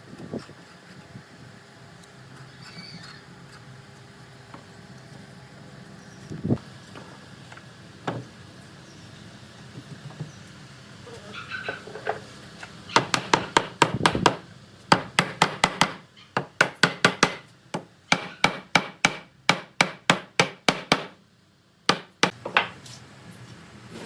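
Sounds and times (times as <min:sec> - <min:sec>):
hammer striking wood: 0:13.0 - 0:21.2, 0:21.9 - 0:22.7.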